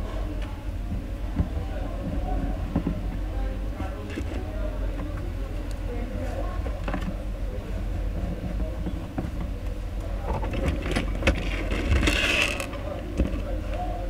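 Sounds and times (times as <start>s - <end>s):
scraping rustle: 10.2s - 13.6s.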